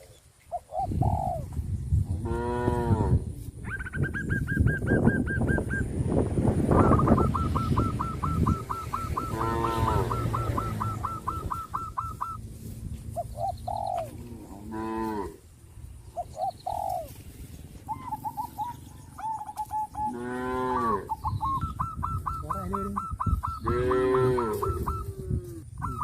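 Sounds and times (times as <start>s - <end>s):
birds chirping: 0.0s - 26.0s
cattle mooing: 9.2s - 11.0s, 14.1s - 15.4s, 20.1s - 21.1s, 23.6s - 24.8s.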